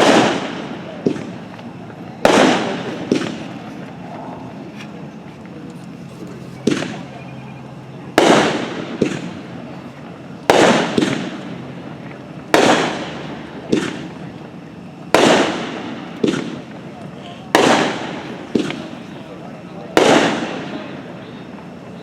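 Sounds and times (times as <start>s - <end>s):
firework bangs with echo: 0.0s - 1.6s, 2.2s - 3.8s, 6.6s - 7.2s, 8.1s - 9.7s, 10.4s - 14.3s, 15.1s - 16.9s, 17.5s - 19.2s, 19.8s - 21.4s.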